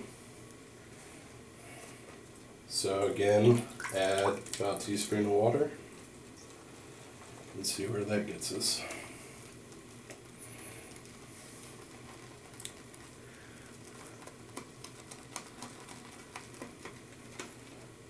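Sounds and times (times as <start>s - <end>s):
shaving brush lathering soap: 10.7s - 17.8s.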